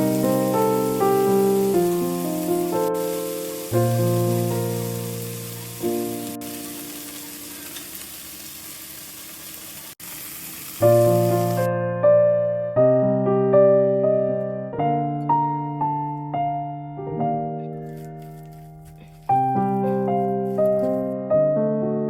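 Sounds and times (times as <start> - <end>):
piano music: 0.0 - 8.0, 10.8 - 22.0
frying sizzle: 0.0 - 11.7, 17.9 - 21.2.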